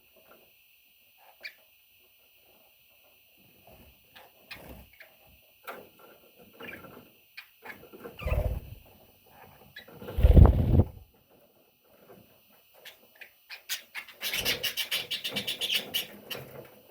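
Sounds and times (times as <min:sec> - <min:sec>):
chicks squeaking: 0:07.4 - 0:08.8
chicks shuffling and scratching: 0:07.8 - 0:12.7
low bumps and rustles: 0:10.2 - 0:11.0.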